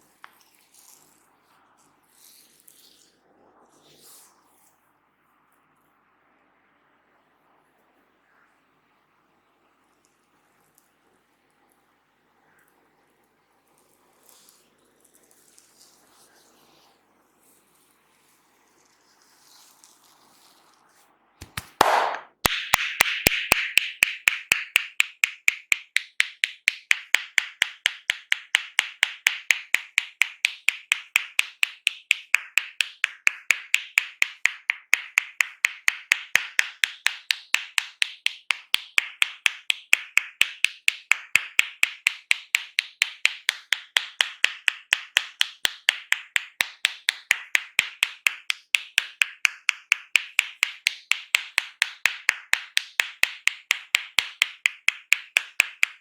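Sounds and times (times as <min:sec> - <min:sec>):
hand rubbing: 0:18.7 - 0:56.0
hands slapping massage taps: 0:21.4 - 0:56.0.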